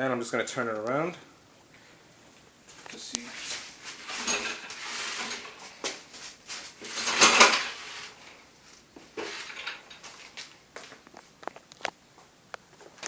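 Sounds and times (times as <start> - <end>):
machine scraping on wood base: 3.9 - 5.6.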